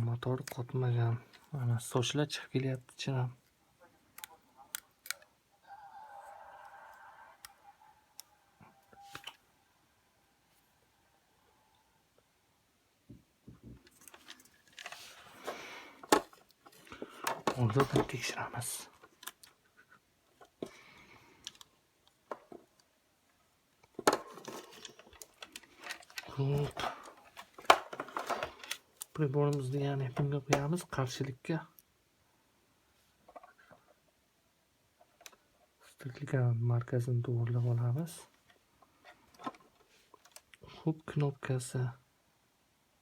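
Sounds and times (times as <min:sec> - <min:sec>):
plastic parts clicking and tapping: 0:13.6 - 0:18.4, 0:21.4 - 0:22.9, 0:23.8 - 0:30.8, 0:35.0 - 0:35.4
small parts clicking and tapping: 0:21.4 - 0:22.9.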